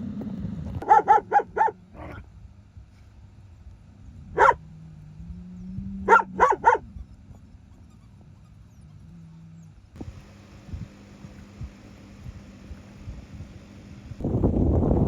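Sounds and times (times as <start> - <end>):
dog barking: 0.8 - 2.2, 4.4 - 4.6, 6.1 - 7.0.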